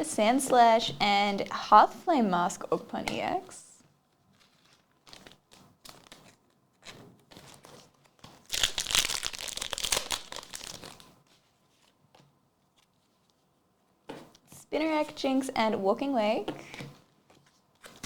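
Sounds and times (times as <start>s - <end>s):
foil wrapper crinkling: 4.1s - 11.2s.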